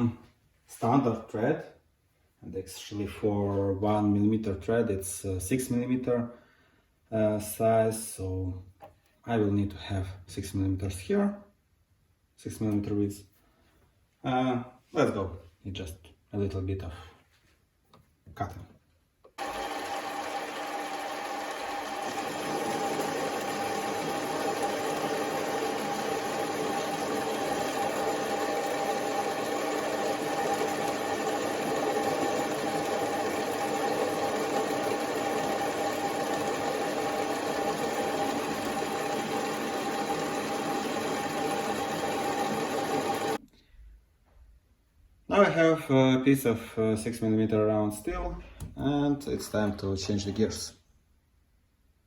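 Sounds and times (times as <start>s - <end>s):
lathe motor and gear whine: 19.4s - 43.4s
metal cutting noise: 19.4s - 43.4s.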